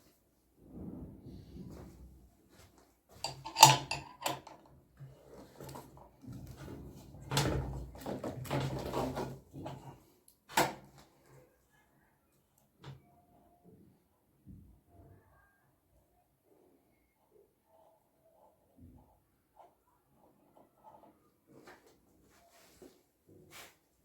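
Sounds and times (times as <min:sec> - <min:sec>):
clattering handling noises: 0:03.1 - 0:04.7.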